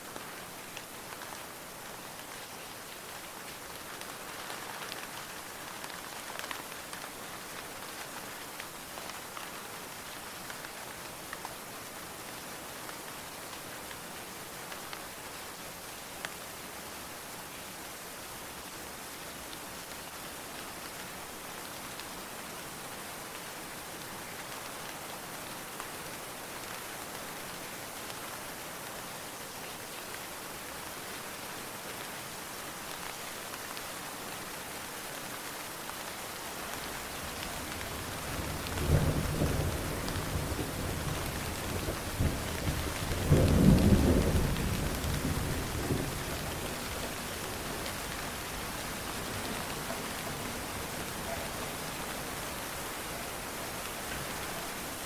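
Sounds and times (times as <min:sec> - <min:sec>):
steady rain: 0:00.0 - 0:55.0
thunder rumbling: 0:36.9 - 0:55.0.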